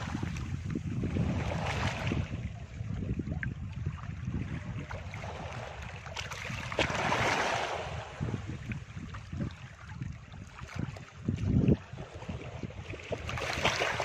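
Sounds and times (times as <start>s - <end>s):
surf washing onto beach: 0.0s - 2.5s, 6.8s - 8.5s
wind buffeting microphone: 0.0s - 14.0s.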